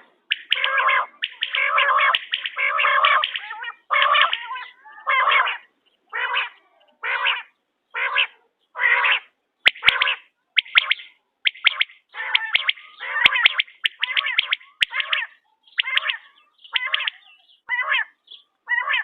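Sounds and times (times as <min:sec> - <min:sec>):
quail calling: 0:00.0 - 0:19.0
sharp clicks: 0:00.3 - 0:03.5.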